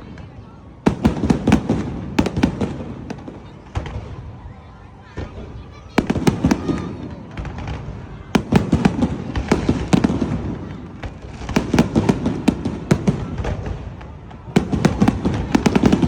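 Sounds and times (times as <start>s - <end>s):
firework bangs and crackles: 0.0s - 16.0s.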